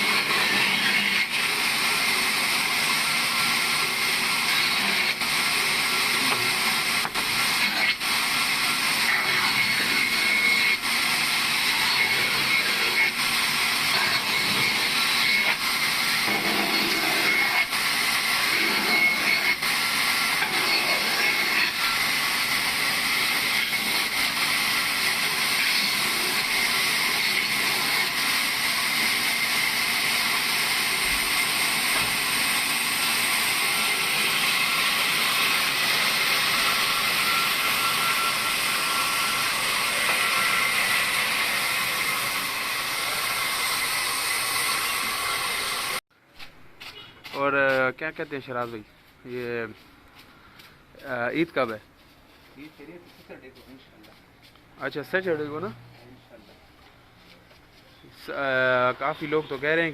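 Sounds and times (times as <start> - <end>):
sawmill saw cutting wood: 0.0 - 46.0, 58.3 - 59.9.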